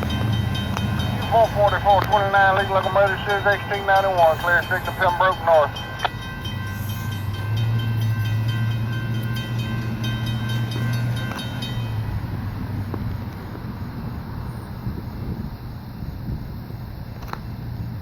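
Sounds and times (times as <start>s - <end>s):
steady high-pitched tones: 0.0s - 13.0s
diesel locomotive engine drone: 0.0s - 18.0s.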